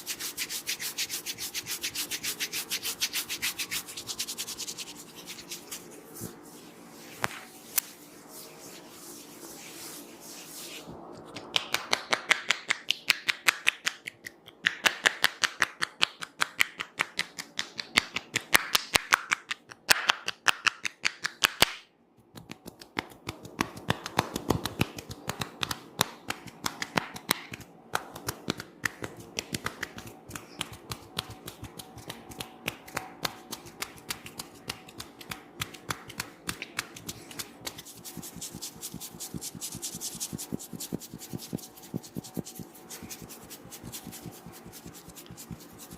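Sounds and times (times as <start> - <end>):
hands tapping on a head: 22.4 - 37.8.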